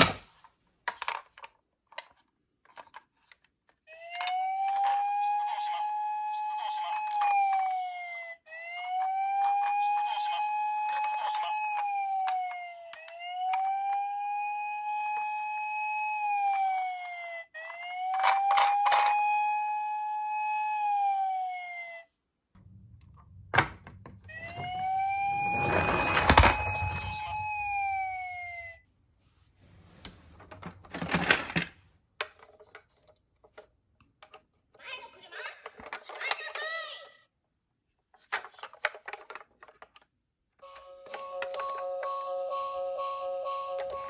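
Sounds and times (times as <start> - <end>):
toy electronic siren wailing: 3.9 - 21.9, 23.7 - 28.8, 40.6 - 44.0.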